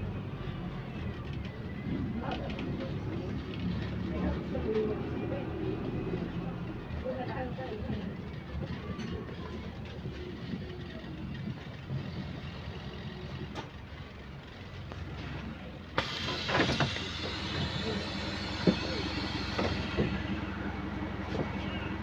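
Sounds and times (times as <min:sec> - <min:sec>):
bus engine running: 0:00.0 - 0:22.0
exhaust hiss and rattle: 0:16.0 - 0:20.4.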